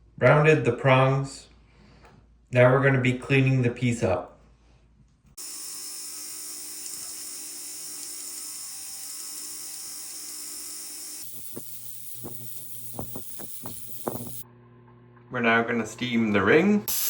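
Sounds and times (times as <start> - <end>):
cleaning machine hissing: 5.4 - 14.4.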